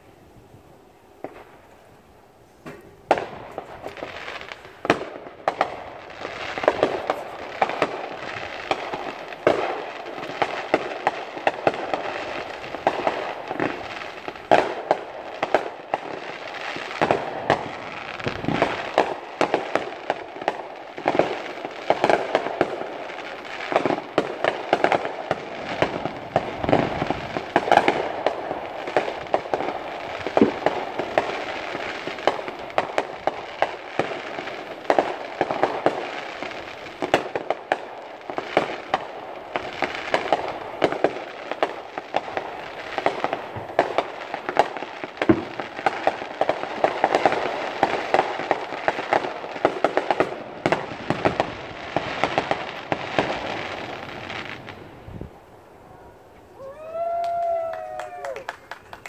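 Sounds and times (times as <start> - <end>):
fireworks bangs and crackles: 0.0 - 59.0.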